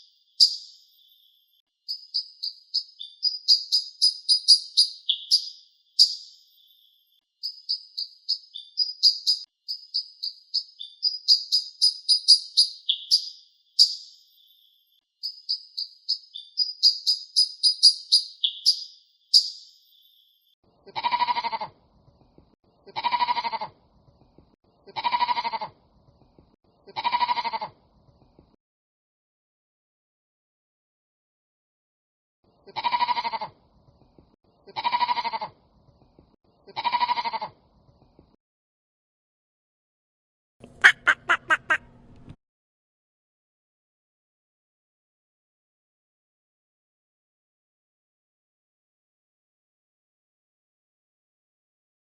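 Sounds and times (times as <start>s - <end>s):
animal bleating: 20.9s - 21.7s, 22.9s - 23.7s, 24.9s - 25.7s, 26.9s - 27.7s, 32.7s - 33.5s, 34.7s - 35.5s, 36.7s - 37.5s, 40.8s - 41.8s
high-pitched chirping: 40.7s - 41.8s.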